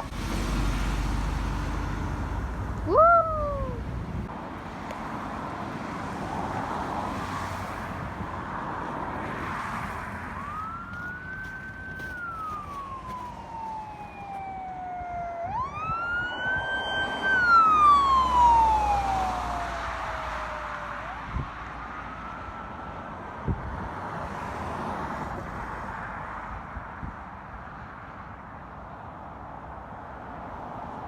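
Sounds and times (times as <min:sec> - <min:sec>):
traffic noise: 0:00.0 - 0:31.0
emergency vehicle siren wailing: 0:02.8 - 0:03.9, 0:09.0 - 0:23.5.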